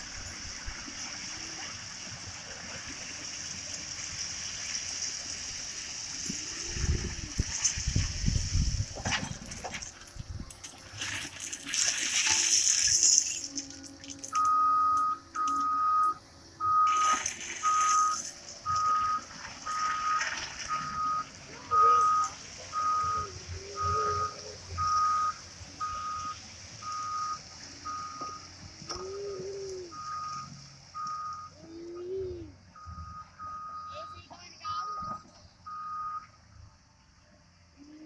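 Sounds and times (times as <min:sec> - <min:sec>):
excavator engine running: 0:00.0 - 0:31.6
excavator travel alarm beeping: 0:13.4 - 0:32.0, 0:32.8 - 0:36.4.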